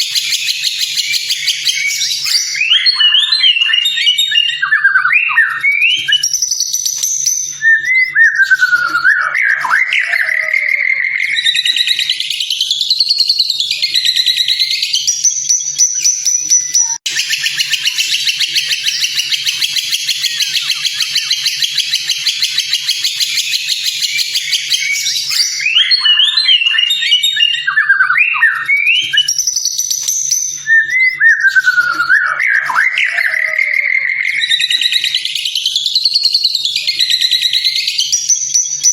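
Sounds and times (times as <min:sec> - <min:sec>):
bird buzzy trill: 0:00.0 - 0:27.8
bird whistling song: 0:00.0 - 0:38.9.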